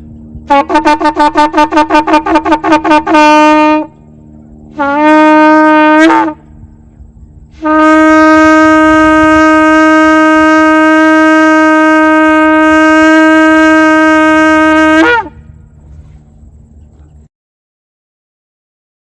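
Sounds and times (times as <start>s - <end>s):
shofar blast: 0.4s - 4.0s, 4.7s - 6.5s, 7.5s - 15.6s.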